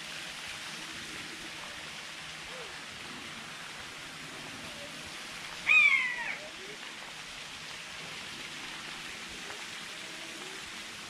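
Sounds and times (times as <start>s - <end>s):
steady hiss: 0.0s - 11.0s
animal call: 5.7s - 6.6s.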